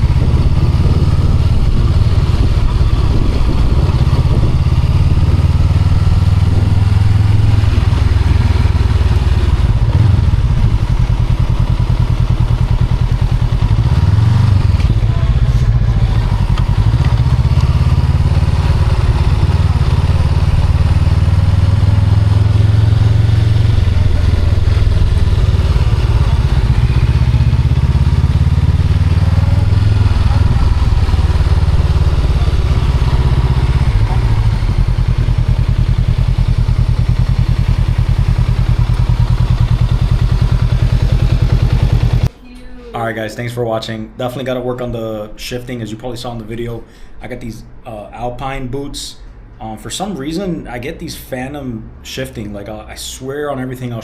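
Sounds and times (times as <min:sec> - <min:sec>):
motorcycle engine running: 0:00.0 - 0:42.4.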